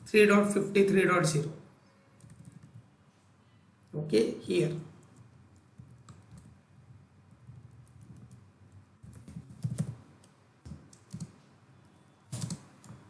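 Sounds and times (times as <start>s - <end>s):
keyboard typing: 2.2s - 2.8s, 5.0s - 13.0s.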